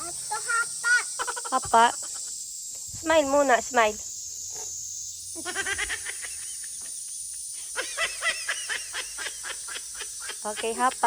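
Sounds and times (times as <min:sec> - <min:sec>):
cicadas droning: 0:00.0 - 0:11.0.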